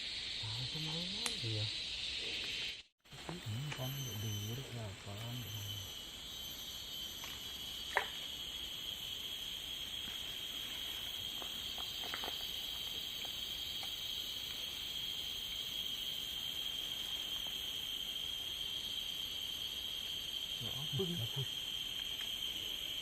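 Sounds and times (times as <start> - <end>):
insects buzzing: 0.0 - 23.0
insects shrilling: 0.0 - 23.0.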